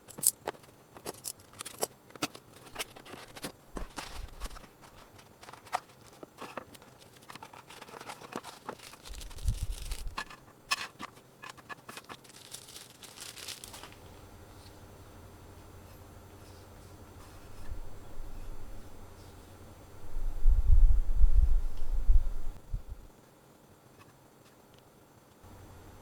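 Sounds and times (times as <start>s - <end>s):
handling clicks and knocks: 0.0s - 14.0s
faint steady hum: 0.0s - 26.0s
packaging tearing and crinkling: 1.1s - 14.0s.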